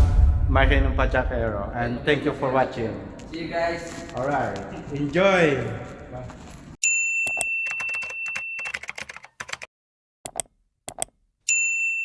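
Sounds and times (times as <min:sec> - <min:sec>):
bell-like ding: 0:06.8 - 0:08.7, 0:11.5 - 0:12.0
fast keyboard typing clicks: 0:07.3 - 0:09.7, 0:10.3 - 0:11.1.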